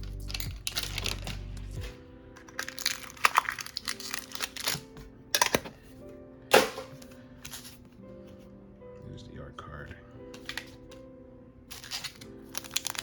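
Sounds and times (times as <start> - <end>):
plastic packaging crinkling: 0.0 - 5.6, 11.7 - 13.0
background music: 0.0 - 13.0.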